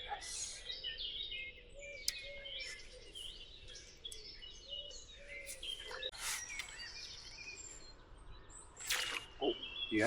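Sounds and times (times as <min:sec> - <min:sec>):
songbirds singing and chirping: 0:00.0 - 0:10.0
sharp click: 0:08.8 - 0:09.5.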